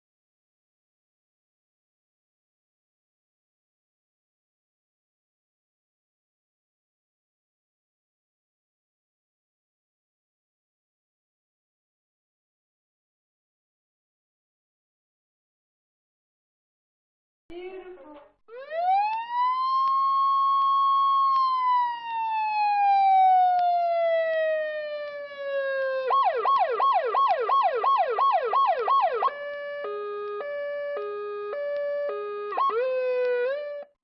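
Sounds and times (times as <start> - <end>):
electronic emergency siren: 18.5 - 34.0.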